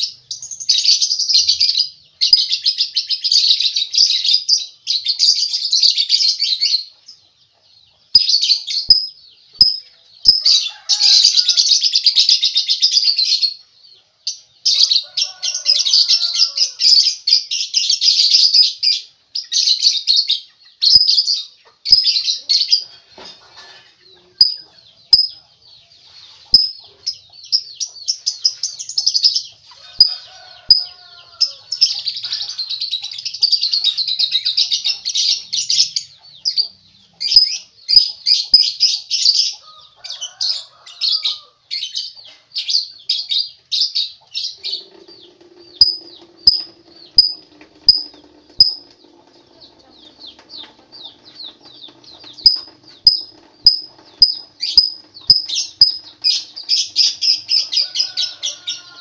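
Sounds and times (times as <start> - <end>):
lovebird chattering: 8.2 - 10.5, 20.9 - 21.3, 21.9 - 22.2, 24.4 - 25.4, 26.6 - 26.8, 37.2 - 38.8, 45.8 - 48.8, 52.4 - 57.7
sharp clicks: 45.8 - 48.8.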